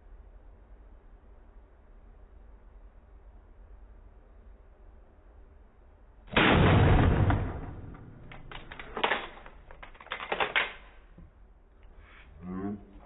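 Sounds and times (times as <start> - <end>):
shotgun shot: 6.3 - 9.5.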